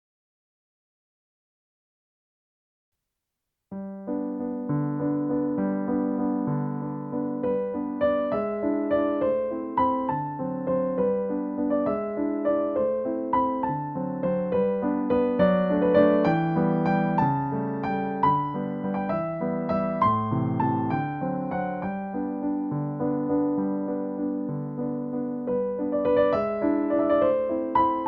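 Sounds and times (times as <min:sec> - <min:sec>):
soft piano music: 0:03.7 - 0:28.0.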